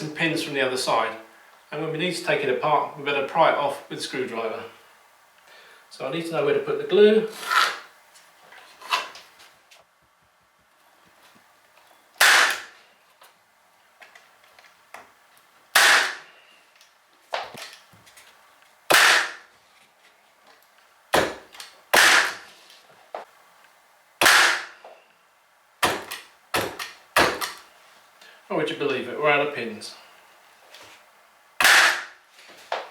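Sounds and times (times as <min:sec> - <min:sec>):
pin nailer shooting into wood: 0:12.2 - 0:12.8, 0:15.7 - 0:16.3, 0:18.9 - 0:19.5, 0:21.1 - 0:22.4, 0:24.2 - 0:24.8, 0:25.8 - 0:27.6, 0:31.6 - 0:32.2.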